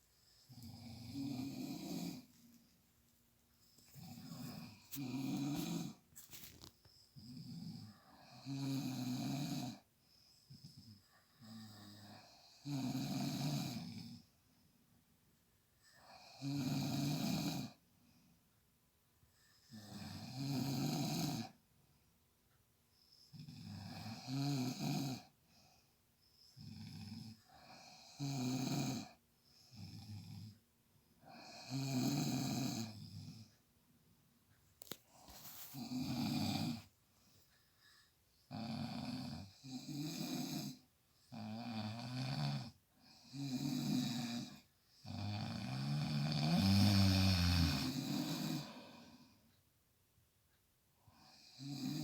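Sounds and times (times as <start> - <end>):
men snoring: 0.5 - 2.3, 4.0 - 6.0, 7.3 - 9.8, 11.4 - 14.2, 16.0 - 17.8, 19.7 - 21.5, 23.3 - 25.3, 26.6 - 30.5, 31.3 - 33.5, 35.8 - 36.9, 38.5 - 49.3, 51.2 - 52.0.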